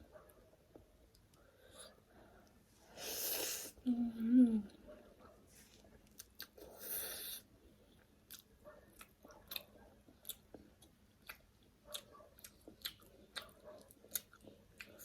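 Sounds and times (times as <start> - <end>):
wet chewing mouth sounds: 8.3 - 15.0.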